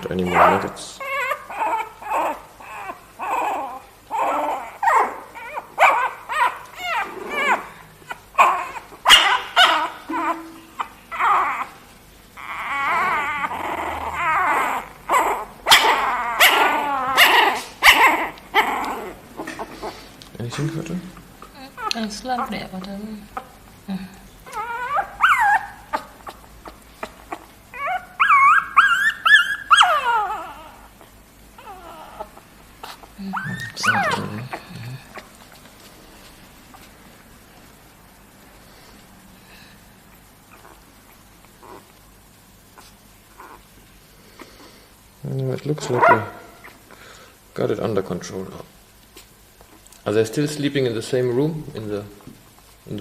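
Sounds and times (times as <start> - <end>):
dog whimpering and yelping: 0.0 - 20.1, 24.4 - 35.4, 40.1 - 43.7
puppy whining: 0.0 - 20.2, 21.4 - 22.6, 24.4 - 37.0, 39.8 - 45.0, 45.8 - 47.2.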